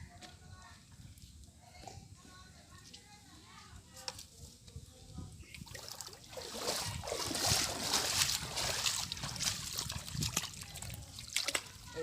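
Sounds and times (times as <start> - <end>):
water splashing and sloshing: 5.5 - 12.0.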